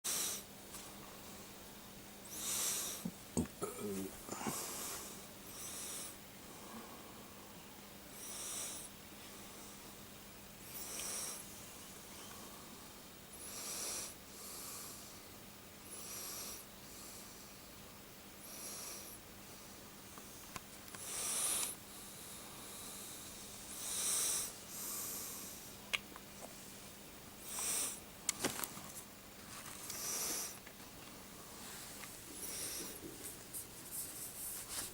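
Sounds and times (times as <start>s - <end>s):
person breathing heavily: 2.3s - 7.5s, 29.8s - 30.6s, 31.4s - 34.9s.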